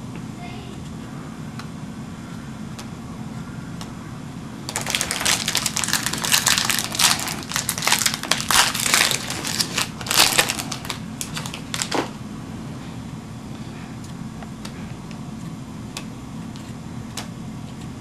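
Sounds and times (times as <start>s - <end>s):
wrapper tearing and crinkling: 4.7s - 12.1s.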